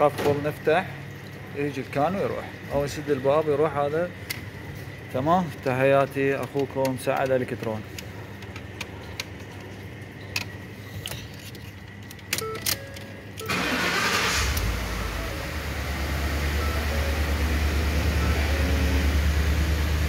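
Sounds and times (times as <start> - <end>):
engine starter cranking: 12.4 - 16.7
engine idling: 13.5 - 20.0.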